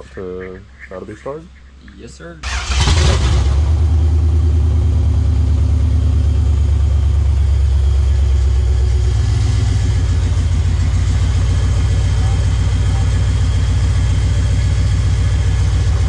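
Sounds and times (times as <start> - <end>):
car engine running loud and low: 2.4 - 16.0.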